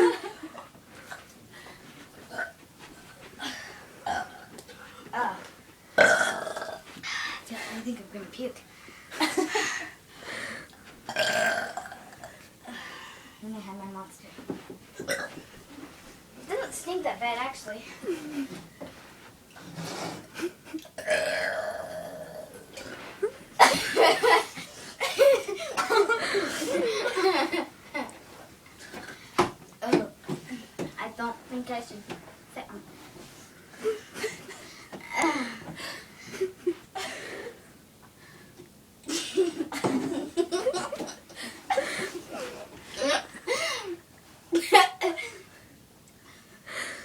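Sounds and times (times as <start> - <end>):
girls laughing and giggling: 0.0 - 0.7, 9.1 - 10.0, 23.2 - 28.2, 33.7 - 37.6, 39.0 - 45.5
girl burping: 3.4 - 4.5, 6.0 - 6.8, 11.1 - 12.3, 15.1 - 15.4, 21.0 - 22.9.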